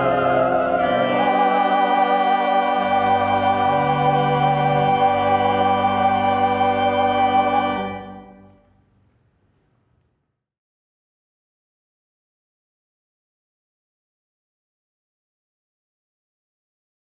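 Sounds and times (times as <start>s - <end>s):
choir singing: 0.0s - 8.6s
pipe organ chord: 0.0s - 8.7s.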